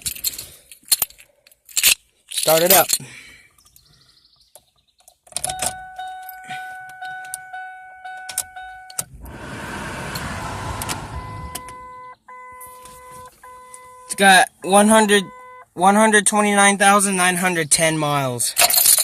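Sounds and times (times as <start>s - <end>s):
car engine cranking and starting: 5.3s - 14.2s
dashboard chime: 5.5s - 9.0s, 11.1s - 14.2s
interrupted warning chime: 5.5s - 9.1s, 10.2s - 15.8s.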